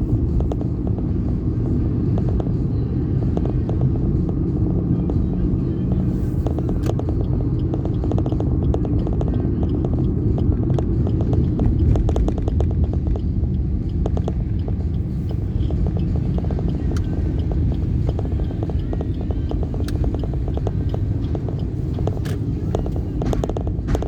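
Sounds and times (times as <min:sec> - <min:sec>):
vehicle road and engine rumble: 0:00.0 - 0:24.0
small clicks and knocks: 0:05.9 - 0:24.0.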